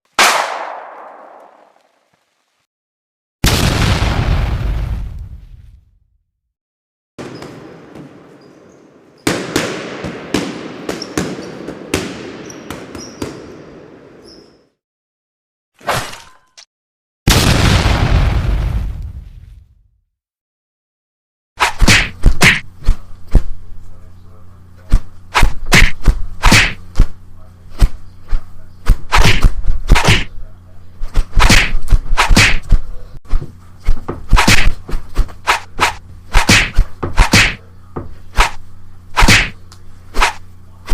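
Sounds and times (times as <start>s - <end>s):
sharp explosive bangs: 0.2s - 1.7s, 3.4s - 5.5s, 17.3s - 19.6s
swishing whacks: 21.6s - 23.4s, 24.9s - 27.1s, 28.8s - 30.3s, 31.1s - 32.9s, 33.9s - 37.6s, 38.3s - 40.9s.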